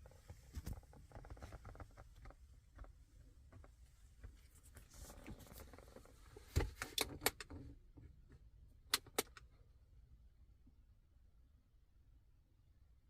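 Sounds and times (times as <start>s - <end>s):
faint handling noise: 0.0s - 8.4s.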